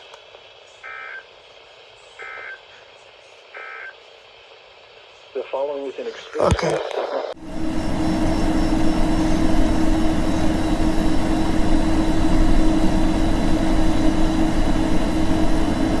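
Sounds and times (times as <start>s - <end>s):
radio static hiss: 0.0s - 7.4s.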